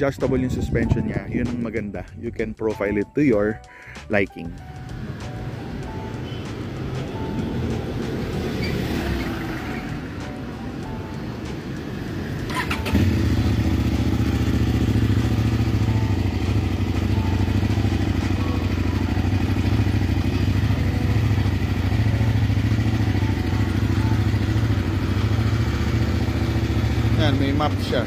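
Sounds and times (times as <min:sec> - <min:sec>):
motorcycle engine starting and idling: 0:11.2 - 0:28.0.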